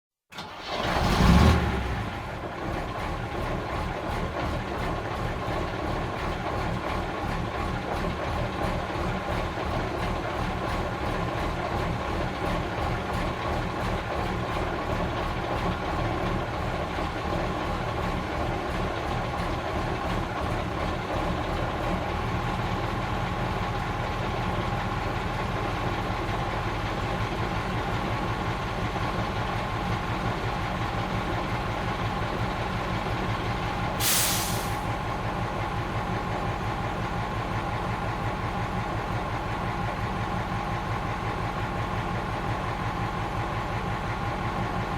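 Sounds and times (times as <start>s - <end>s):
diesel engine idling: 0.4s - 44.9s
air-brake release hiss: 34.0s - 34.9s.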